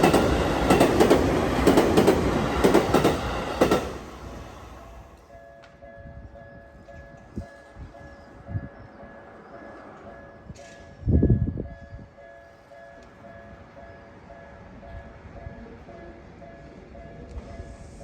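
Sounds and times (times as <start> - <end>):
level crossing warning bell: 5.2 - 18.0.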